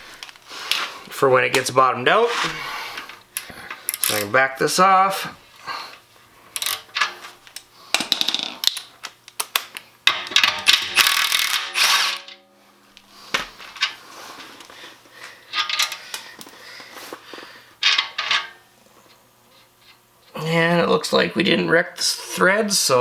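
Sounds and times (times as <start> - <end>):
impact gun whirring: 10.1 - 12.4.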